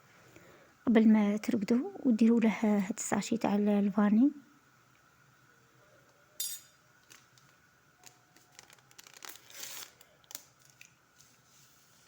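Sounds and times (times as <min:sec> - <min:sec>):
sachet tearing open: 0:07.0 - 0:11.0
sachet crinkling: 0:07.0 - 0:11.9.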